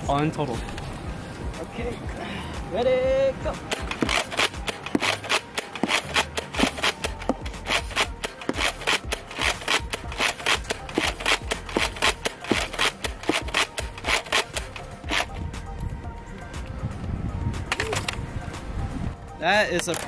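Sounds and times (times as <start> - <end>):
toy blaster clacks and pops: 3.7 - 15.3.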